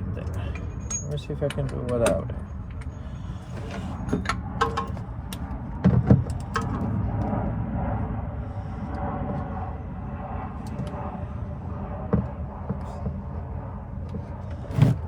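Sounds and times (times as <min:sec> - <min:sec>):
steady low rumble: 0:00.0 - 0:15.0
tools clicking and knocking: 0:03.6 - 0:06.9.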